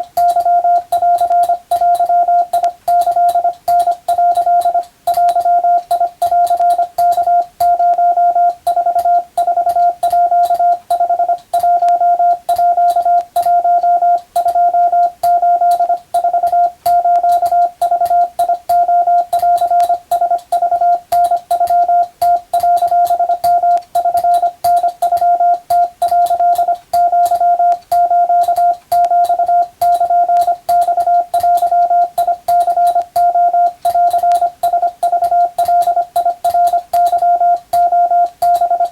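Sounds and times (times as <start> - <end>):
faint keying clicks: 0.0 - 38.9
morse code tone: 0.0 - 38.9.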